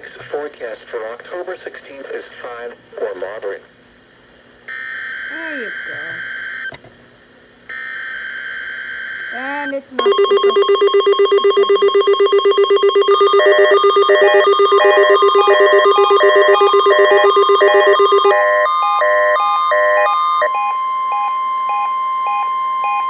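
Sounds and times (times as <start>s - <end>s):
beeping alarm: 10.0s - 23.0s
fast-pulsing alarm beep: 10.0s - 23.0s
steady warning alarm tone: 10.0s - 23.0s.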